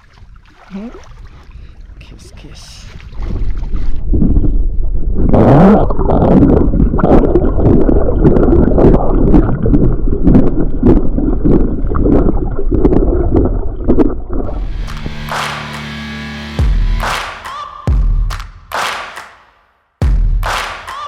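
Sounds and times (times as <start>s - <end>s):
water lapping and gurgling: 0.0s - 14.7s
wind buffeting microphone: 2.8s - 12.2s.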